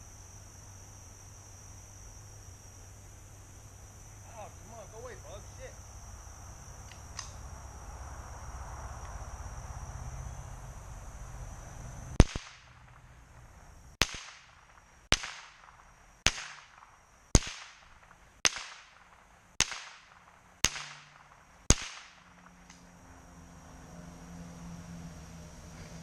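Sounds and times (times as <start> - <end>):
rifle gunshots: 12.2 - 13.2, 14.0 - 22.6.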